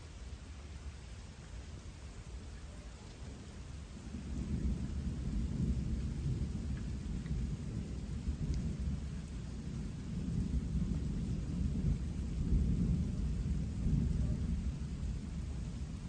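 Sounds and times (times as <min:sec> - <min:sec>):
faint rain patter: 0:00.0 - 0:16.0
rolling thunder: 0:04.0 - 0:16.0.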